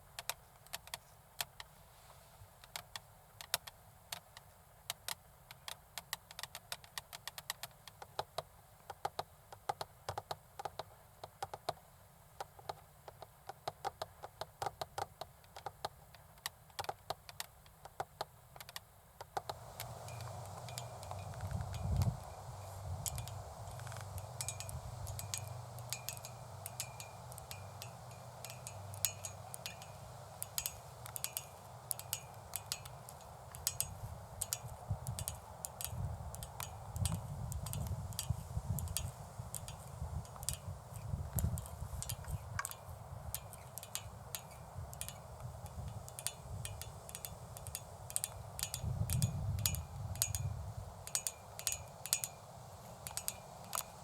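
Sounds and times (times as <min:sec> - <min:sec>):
fingernails tapping: 0:19.3 - 0:50.5.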